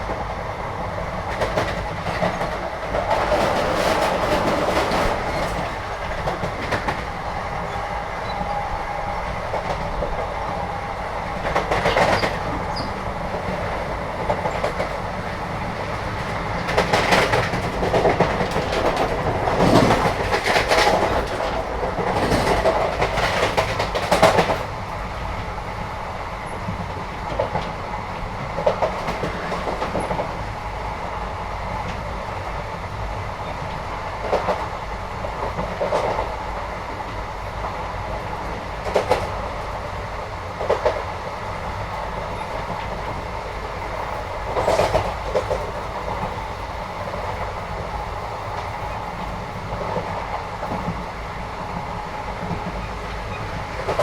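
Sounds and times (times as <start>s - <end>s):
train carriage rumble: 0.0s - 54.0s
wheels clattering over rail joints: 1.4s - 8.6s, 15.8s - 24.7s.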